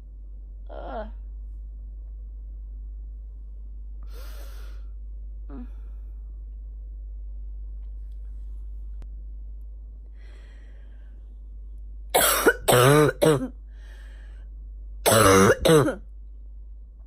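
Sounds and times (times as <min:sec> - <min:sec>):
barking cough: 0:12.2 - 0:13.5, 0:15.1 - 0:16.0.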